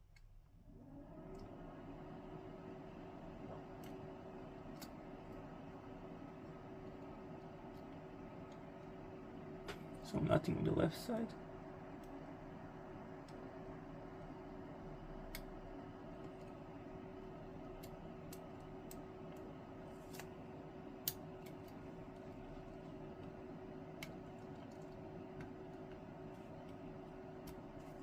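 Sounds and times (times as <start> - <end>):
steady hum: 0.0 - 28.0.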